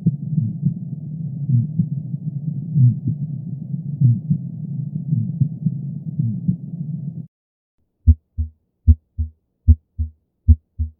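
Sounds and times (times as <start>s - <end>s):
heartbeat thuds: 8.1s - 10.9s.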